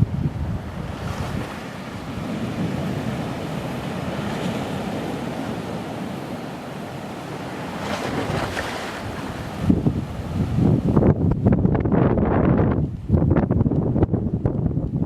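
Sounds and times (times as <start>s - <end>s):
wind noise on microphone: 0.0s - 5.8s, 7.7s - 15.0s
river waves washing: 0.0s - 11.3s.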